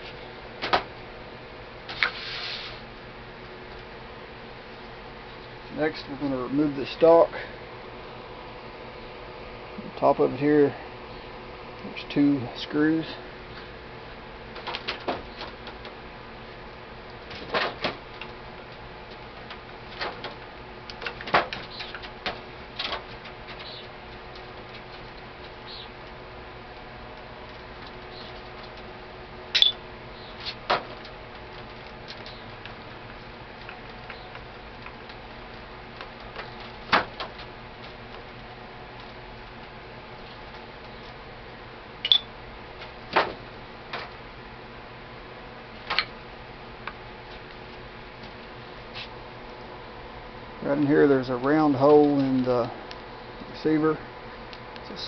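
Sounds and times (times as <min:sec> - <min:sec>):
steady room hum: 0:00.0 - 0:55.0
metal tools clicking and clinking: 0:29.6 - 0:29.8.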